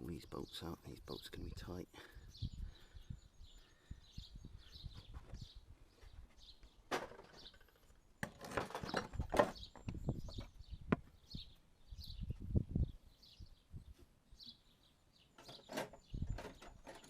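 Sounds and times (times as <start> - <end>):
birds chirping: 0.0 - 17.0
hand tools clanking on metal: 15.4 - 17.0.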